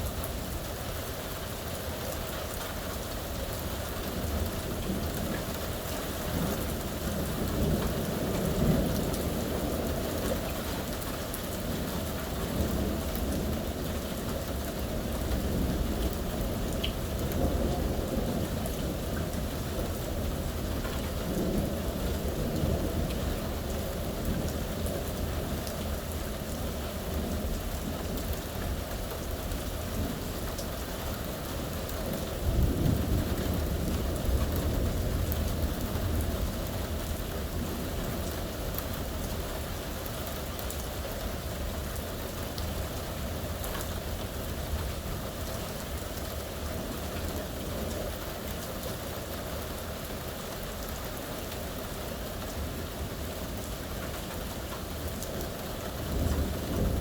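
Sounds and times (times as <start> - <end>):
heavy rain: 0.0 - 57.0
thunder rumble: 55.9 - 57.0.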